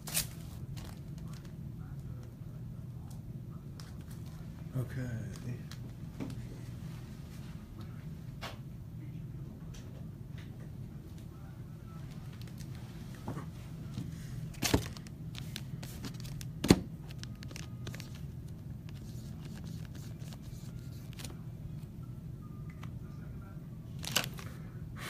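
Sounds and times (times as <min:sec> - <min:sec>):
steady low hum: 0:00.0 - 0:25.0
plastic packaging crinkling: 0:14.5 - 0:21.4, 0:23.9 - 0:24.6.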